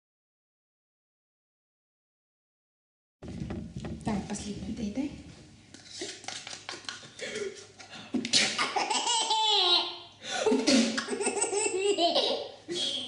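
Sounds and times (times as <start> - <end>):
baby laughing: 8.4 - 13.0.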